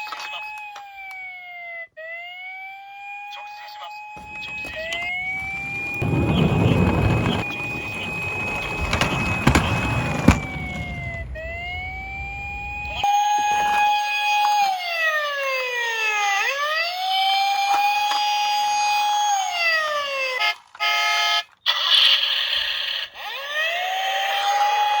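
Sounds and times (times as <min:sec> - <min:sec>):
police siren wailing: 0:00.6 - 0:03.3, 0:04.0 - 0:20.0
toy cars rolling down ramp: 0:04.2 - 0:14.5.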